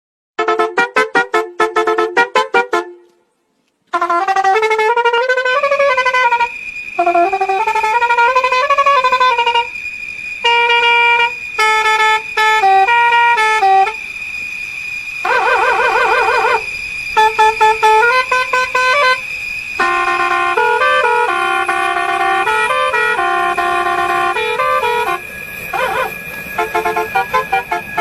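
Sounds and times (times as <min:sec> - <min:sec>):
musical horn tune: 0:00.4 - 0:03.3, 0:03.9 - 0:09.8, 0:10.4 - 0:14.1, 0:15.2 - 0:28.0
short horn honks: 0:00.4 - 0:03.3, 0:19.8 - 0:28.0
steady high tone: 0:04.0 - 0:28.0.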